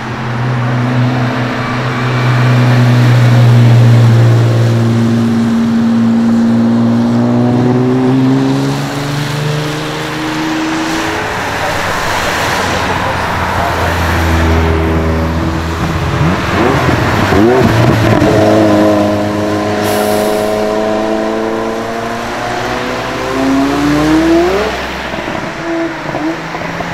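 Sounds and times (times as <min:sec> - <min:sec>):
supercar engines accelerating: 0:00.0 - 0:26.9
tyres swishing on wet road: 0:01.0 - 0:26.9
car passing with hiss: 0:19.7 - 0:20.8.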